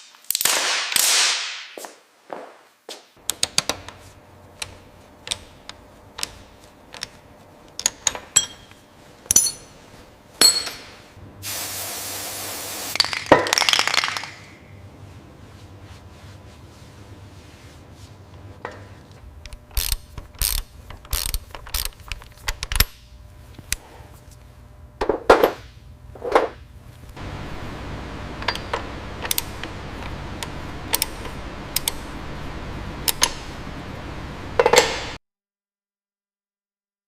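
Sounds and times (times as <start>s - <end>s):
steady background hiss: 13.9s - 35.1s.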